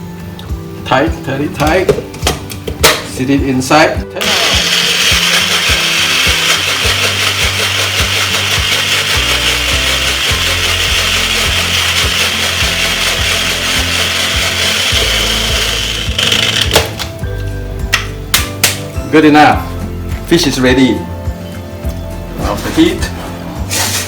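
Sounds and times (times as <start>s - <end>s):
electric blender running: 4.2s - 17.1s.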